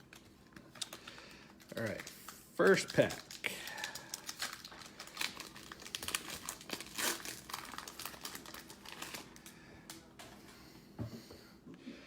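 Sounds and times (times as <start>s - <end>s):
cellophane wrapper crinkling and tearing: 0.0s - 9.6s.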